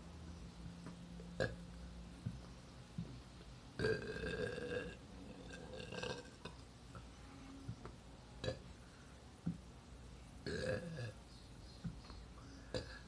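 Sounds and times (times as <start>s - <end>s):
boy burping: 1.4s - 1.6s, 3.8s - 6.6s, 10.4s - 11.2s, 12.7s - 13.0s.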